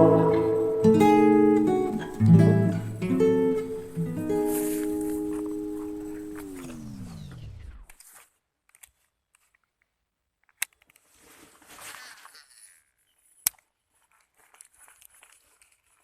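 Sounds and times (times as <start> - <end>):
guitar music: 0.0 - 7.6.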